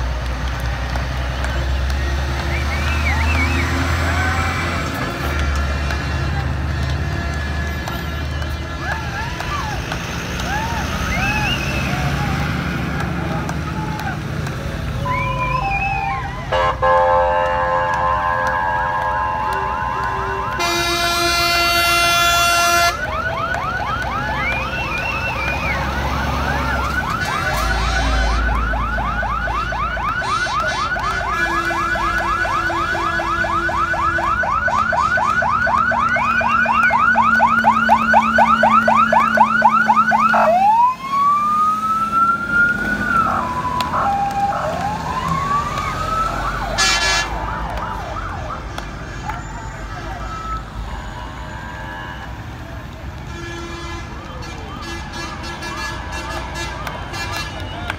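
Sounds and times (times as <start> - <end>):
fire engine sirens yelping: 0.0 - 53.4, 54.0 - 57.9
long horn blast: 16.5 - 23.0, 46.7 - 47.4.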